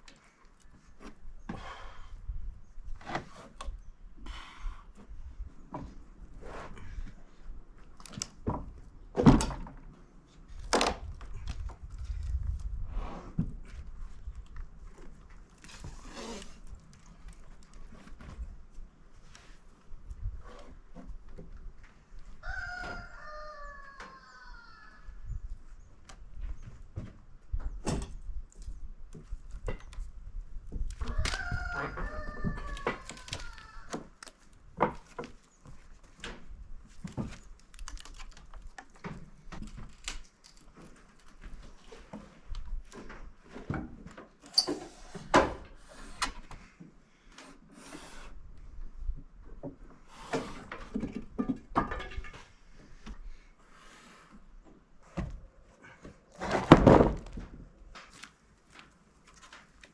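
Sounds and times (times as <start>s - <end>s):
rooster crowing: 22.4s - 25.0s, 31.1s - 33.8s.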